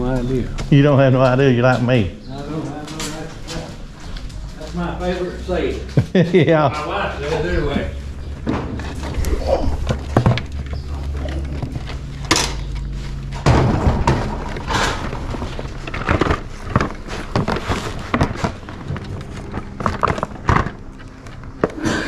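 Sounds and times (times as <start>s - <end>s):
low rumble: 3.7s - 21.6s
goods being handled: 6.8s - 22.0s.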